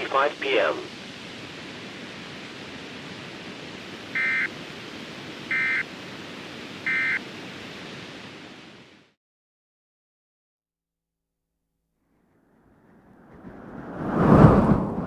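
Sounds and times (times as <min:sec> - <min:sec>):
radio hiss: 0:00.0 - 0:09.1
buzzy data bursts: 0:03.9 - 0:06.1, 0:06.8 - 0:07.8.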